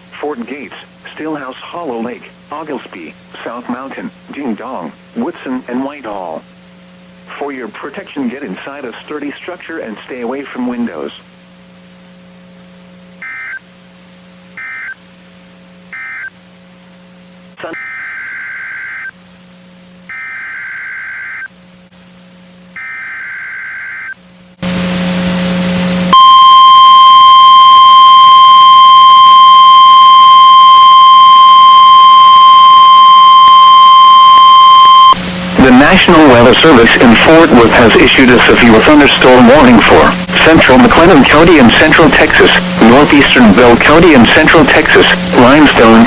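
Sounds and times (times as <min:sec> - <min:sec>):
radio static: 0:00.2 - 0:06.4, 0:07.3 - 0:11.2, 0:17.6 - 0:17.9, 0:26.2 - 0:46.0
steady warning alarm tone: 0:13.2 - 0:13.6, 0:14.6 - 0:15.0, 0:15.9 - 0:16.3, 0:17.6 - 0:19.2, 0:20.1 - 0:21.5, 0:22.8 - 0:24.2, 0:26.1 - 0:45.9
screechy digital data tones: 0:17.6 - 0:19.1, 0:26.2 - 0:35.2.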